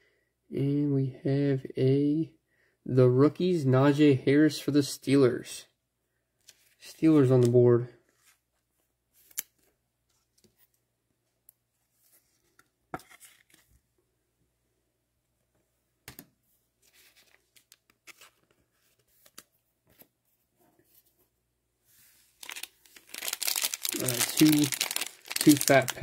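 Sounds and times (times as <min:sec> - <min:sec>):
card pack wrapper crinkling and tearing: 0:22.4 - 0:26.0
cards clicking and rustling: 0:22.4 - 0:26.0.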